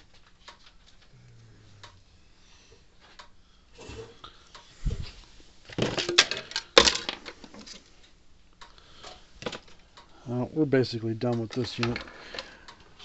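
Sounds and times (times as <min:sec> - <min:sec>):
objects clattering and knocking: 0:05.7 - 0:07.8.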